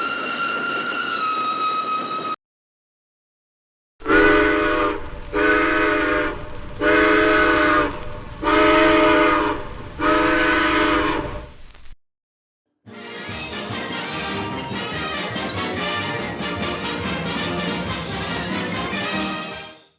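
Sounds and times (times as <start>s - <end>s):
train whistle blasts: 4.0s - 11.6s
steady low rumble: 4.3s - 11.9s.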